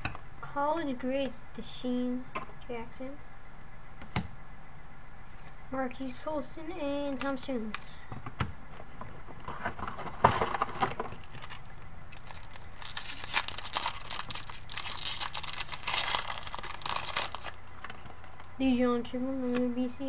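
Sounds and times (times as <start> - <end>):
wrapper tearing and crinkling: 10.3 - 18.1.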